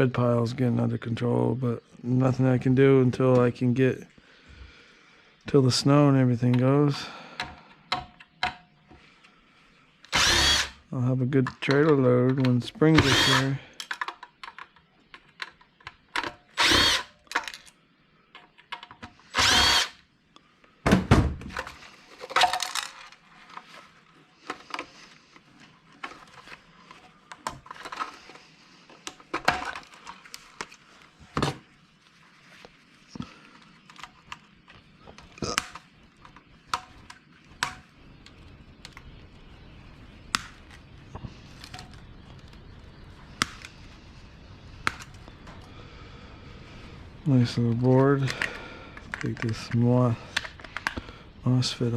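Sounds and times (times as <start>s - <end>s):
power drill whining: 10.1s - 10.8s, 12.9s - 13.6s, 16.6s - 17.2s, 19.2s - 20.0s
small parts clattering: 11.3s - 19.1s, 21.5s - 30.8s, 47.7s - 51.0s.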